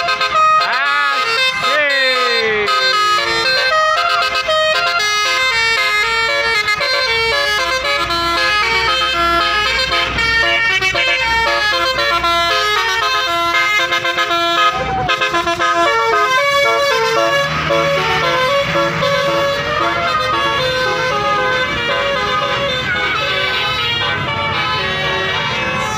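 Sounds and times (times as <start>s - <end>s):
multi-tone bus horn melody: 0.0s - 25.9s.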